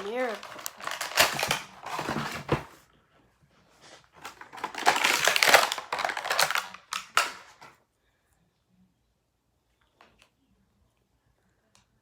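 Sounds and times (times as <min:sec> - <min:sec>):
toy packaging crackling and clicking: 0:00.0 - 0:02.6, 0:04.2 - 0:07.8.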